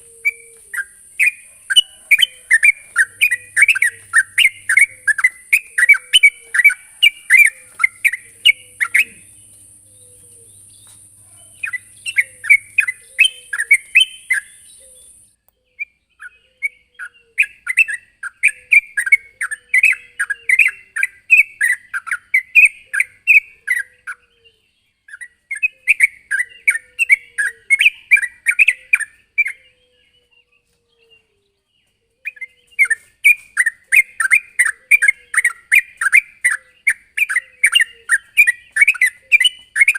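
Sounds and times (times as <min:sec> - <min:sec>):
bird song bubbly chirps: 0:00.0 - 0:24.4.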